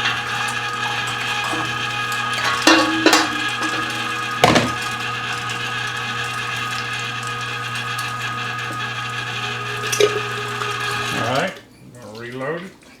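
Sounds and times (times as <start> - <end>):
electric meat grinder running: 0.0 - 11.6.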